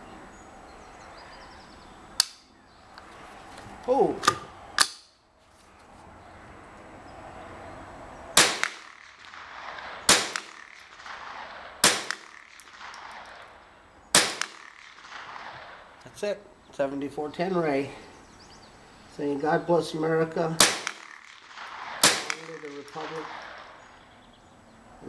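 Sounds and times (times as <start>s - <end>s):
rifle shots with echo: 8.4s - 16.0s, 20.5s - 24.1s.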